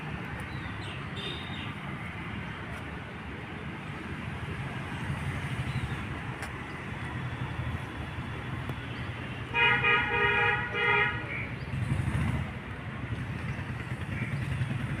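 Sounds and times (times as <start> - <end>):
passing road traffic rumble: 0.0 - 15.0
vehicle horn honking: 9.5 - 11.3.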